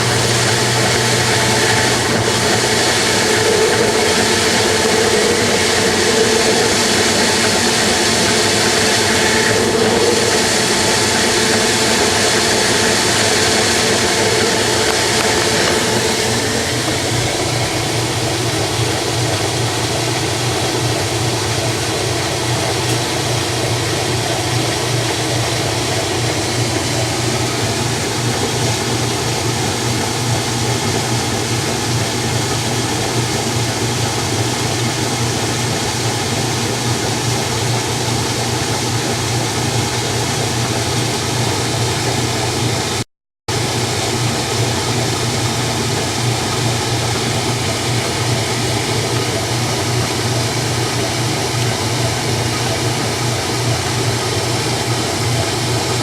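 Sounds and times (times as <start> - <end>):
mechanical whir: 0.0 - 31.6
washing machine motor hum: 0.0 - 43.0, 43.6 - 56.0.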